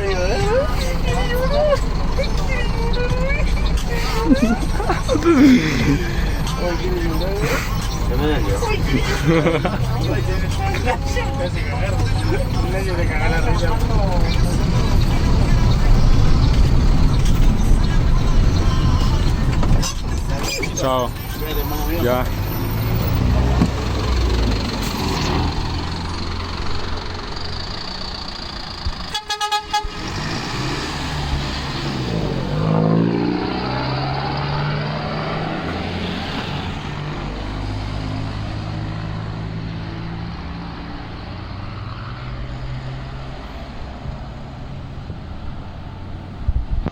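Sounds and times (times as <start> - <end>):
diesel bus engine running: 0.0 - 46.9
vehicle horn blast: 29.1 - 30.1.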